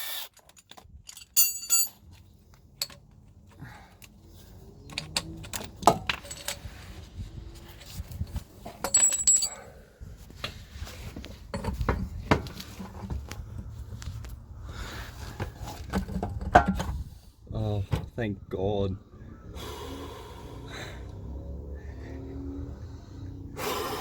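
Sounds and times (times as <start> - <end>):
metal clinks and knocks: 0.4 - 4.1, 4.9 - 6.9, 7.8 - 9.7, 11.5 - 13.3.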